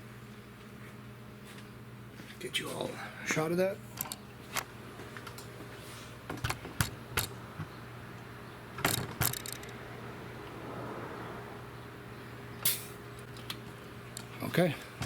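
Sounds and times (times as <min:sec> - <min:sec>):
metallic clicks of tools: 0:08.8 - 0:09.8.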